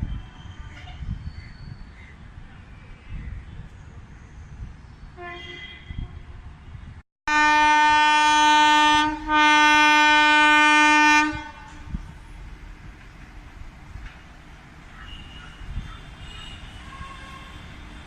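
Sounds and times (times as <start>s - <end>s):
locomotive air horn blasts: 5.2s - 6.4s, 7.3s - 12.0s, 16.2s - 17.8s.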